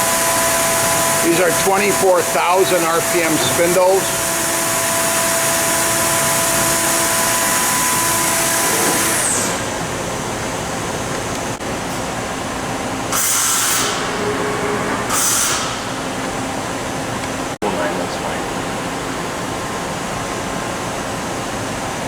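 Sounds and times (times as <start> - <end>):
cnc machine hissing: 0.0 - 9.8, 13.1 - 17.0
falling machine whine: 0.0 - 9.9, 11.7 - 19.7.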